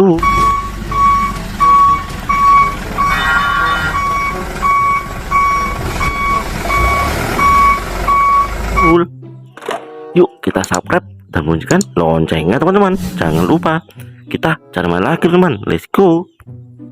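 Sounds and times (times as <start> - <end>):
low engine-like rumble: 0.0 - 9.0
high electronic tones: 0.2 - 9.0
toy truck reversing beeps: 0.2 - 9.0.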